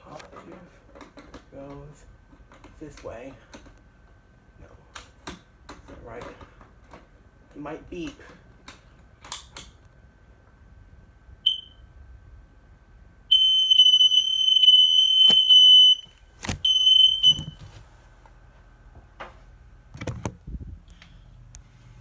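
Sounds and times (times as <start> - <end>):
smoke alarm test tone: 11.4 - 11.9, 13.3 - 17.7.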